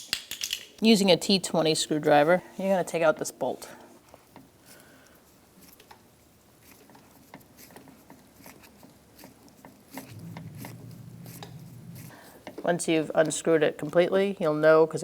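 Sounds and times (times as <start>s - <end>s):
low steady hum: 10.0s - 12.5s.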